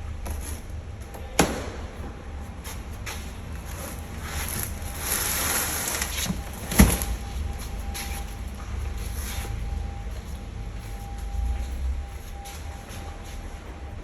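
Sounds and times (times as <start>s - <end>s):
steady low rumble: 0.0s - 14.0s
rustling or scraping: 2.6s - 13.6s.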